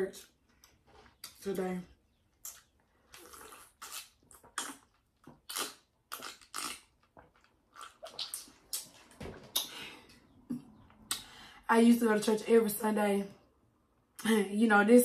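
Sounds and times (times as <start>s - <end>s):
chewing and lip-smacking: 2.3s - 9.7s.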